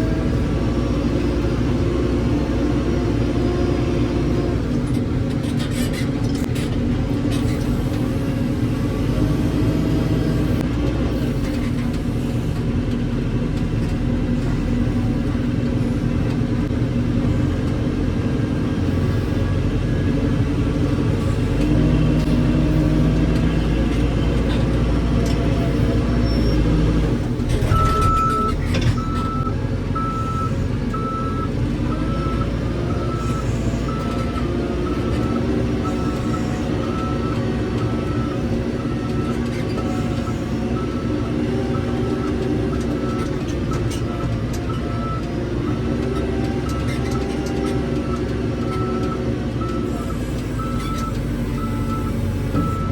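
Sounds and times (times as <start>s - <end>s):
heavy diesel engine running: 0.0s - 52.9s
reversing alarm beeping: 27.6s - 39.4s.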